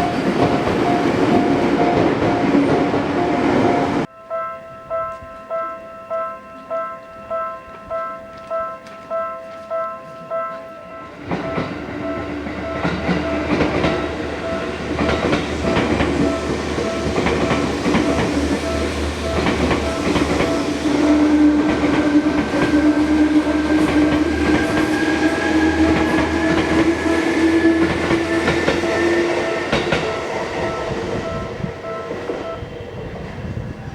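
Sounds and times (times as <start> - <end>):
crossing warning bell clanging: 0.0 - 33.0
wheels clicking over rail joints: 7.7 - 32.6
train motor whine: 11.4 - 33.7.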